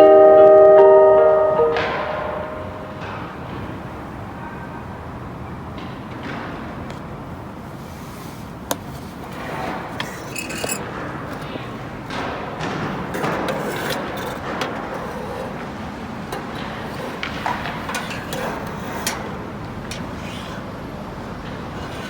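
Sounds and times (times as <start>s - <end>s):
urban traffic noise: 0.0s - 22.0s.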